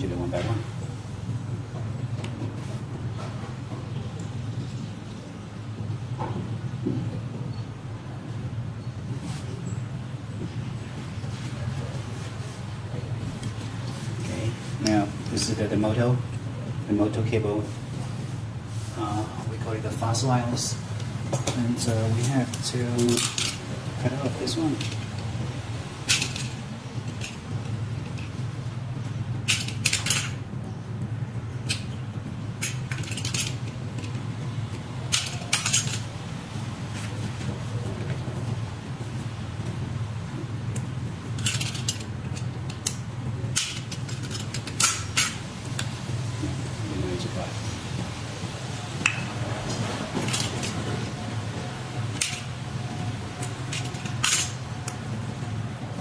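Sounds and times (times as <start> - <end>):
steady low hum: 0.0 - 56.0
metallic scrapes and rattles: 32.6 - 34.2, 35.1 - 36.1, 52.1 - 54.7.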